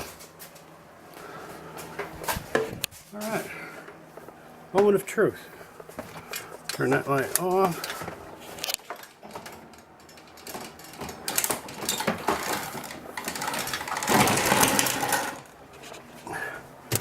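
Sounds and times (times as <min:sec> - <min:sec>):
hand tools clicking and clattering: 0:05.8 - 0:16.0.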